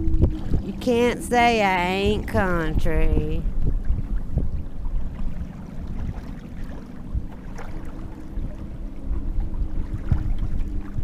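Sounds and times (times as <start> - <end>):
distant motorboat engine hum: 0.0 - 11.0
wind rumbling on microphone: 0.0 - 11.0.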